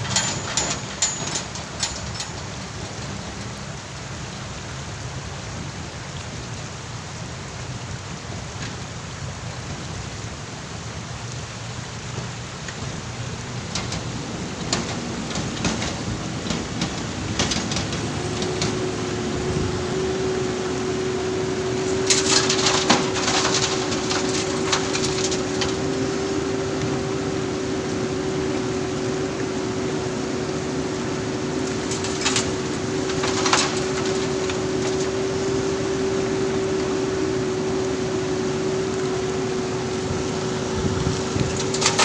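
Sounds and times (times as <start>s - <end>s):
clattering and rattling: 0.0s - 3.6s, 12.2s - 19.2s, 21.8s - 26.6s, 31.5s - 35.4s, 41.2s - 42.0s
backhoe loader engine hum: 0.0s - 42.0s.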